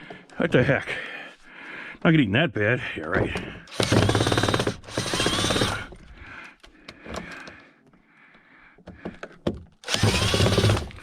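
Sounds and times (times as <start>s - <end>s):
cordless power drill whirring: 3.7s - 6.0s, 9.8s - 11.0s.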